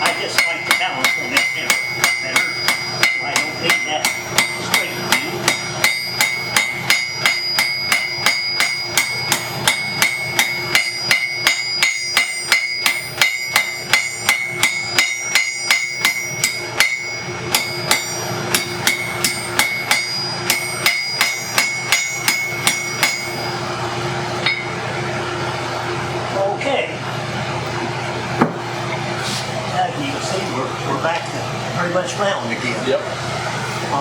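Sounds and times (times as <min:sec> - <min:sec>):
hammer ringing on anvil: 0:00.0 - 0:23.7, 0:24.4 - 0:24.8
steady low hum: 0:00.0 - 0:34.0.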